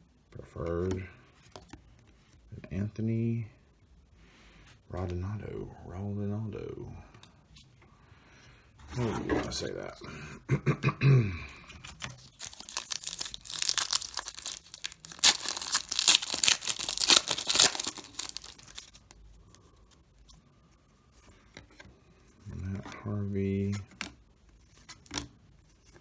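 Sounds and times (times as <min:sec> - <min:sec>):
wrapper tearing and crinkling: 0:11.9 - 0:19.1.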